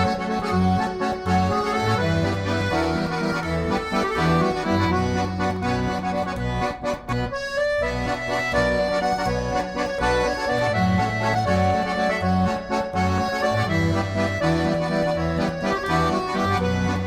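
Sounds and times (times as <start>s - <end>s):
melody over stepping bass line: 0.0s - 17.0s.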